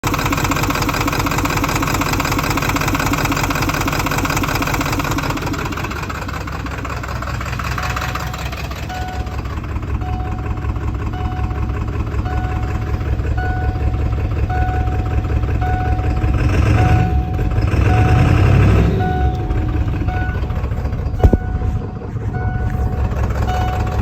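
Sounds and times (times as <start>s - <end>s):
diesel engine idling roughly: 0.0s - 24.0s.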